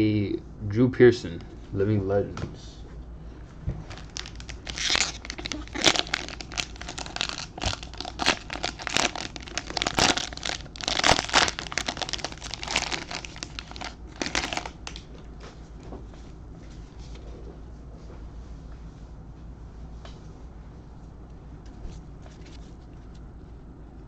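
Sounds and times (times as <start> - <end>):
plastic wrapper crinkling: 3.8 - 15.1.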